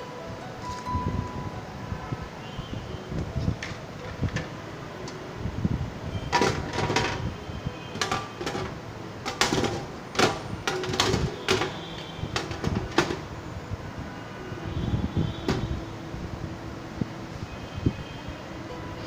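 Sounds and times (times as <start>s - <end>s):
hard parts clicking and knocking: 3.6s - 5.2s, 6.3s - 7.3s, 7.9s - 13.4s, 15.4s - 15.8s.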